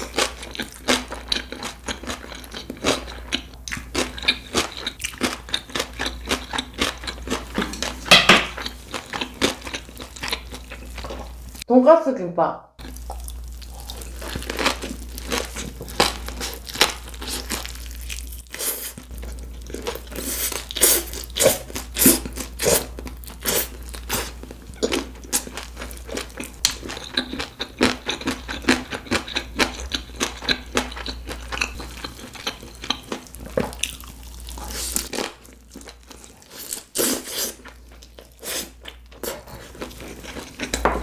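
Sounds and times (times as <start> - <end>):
crunchy chewing: 12.8 - 40.9.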